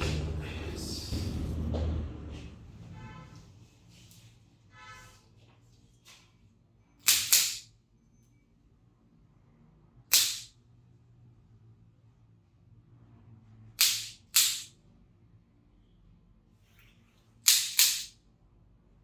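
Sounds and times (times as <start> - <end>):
sharp joint cracks: 7.0 - 7.7, 13.8 - 14.7, 17.5 - 18.2.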